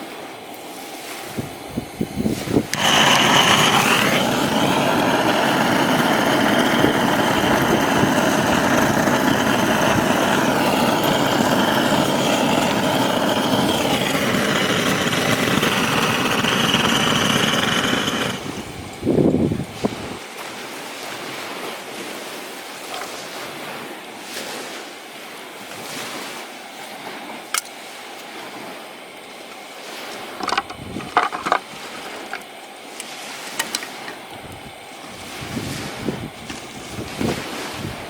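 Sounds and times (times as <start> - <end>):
gas torch hissing: 2.0 - 19.7.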